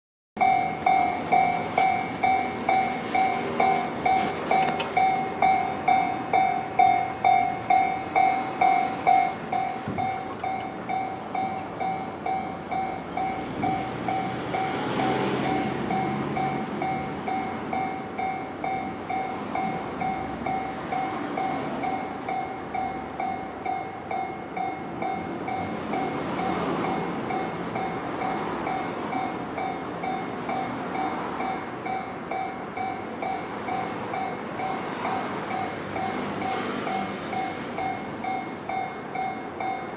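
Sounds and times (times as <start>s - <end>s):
level crossing alarm bell ringing: 0.4s - 39.9s.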